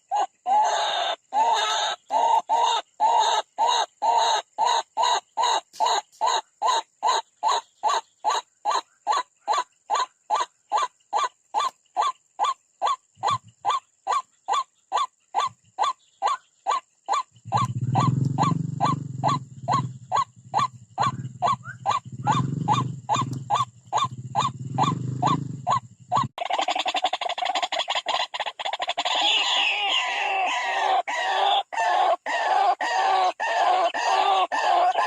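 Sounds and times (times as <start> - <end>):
waterhen calling: 15.4 - 35.0
low rumbling: 17.4 - 26.3.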